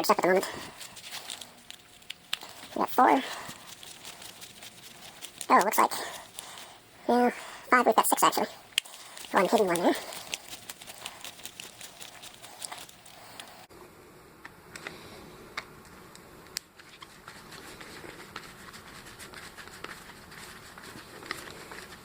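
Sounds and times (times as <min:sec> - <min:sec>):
faint steady hum: 0:00.0 - 0:22.0
parts being handled: 0:00.6 - 0:06.8.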